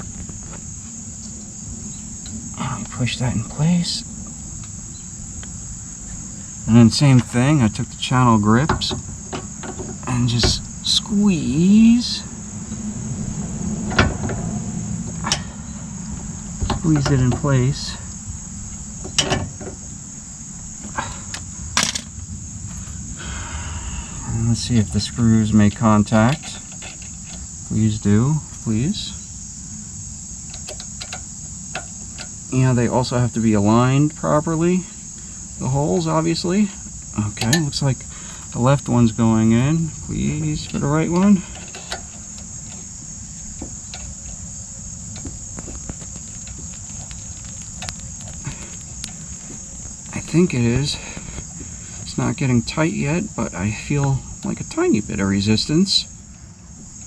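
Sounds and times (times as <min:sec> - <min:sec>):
crickets chirping: 0:00.0 - 0:57.0
low background rumble: 0:00.0 - 0:57.0.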